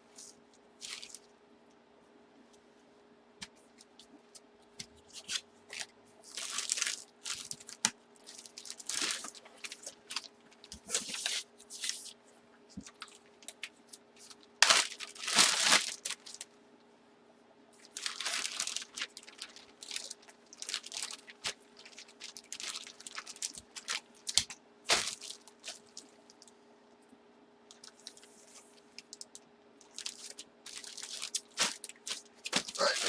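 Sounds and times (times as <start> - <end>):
plastic bags crinkling: 0.8 - 1.3, 5.1 - 12.1, 12.8 - 16.5, 17.8 - 26.5, 27.7 - 33.0.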